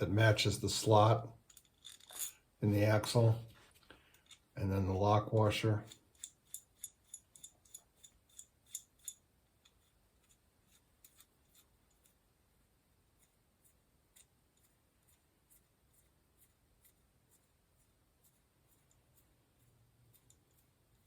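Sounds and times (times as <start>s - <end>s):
small steel parts clicking: 1.4s - 2.4s, 4.1s - 4.6s, 5.8s - 12.2s, 20.1s - 21.0s.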